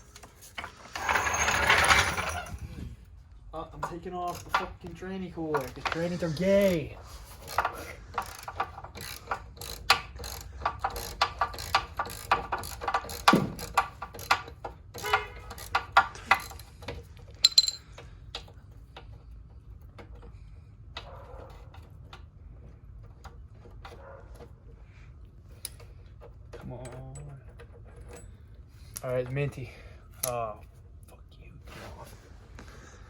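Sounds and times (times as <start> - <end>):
hand tools clicking on metal: 7.4 - 19.1.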